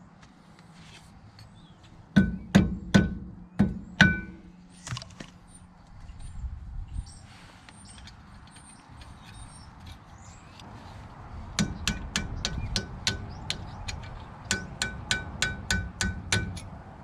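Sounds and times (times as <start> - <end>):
hammer striking metal chisel: 2.2 - 4.4, 11.6 - 16.7.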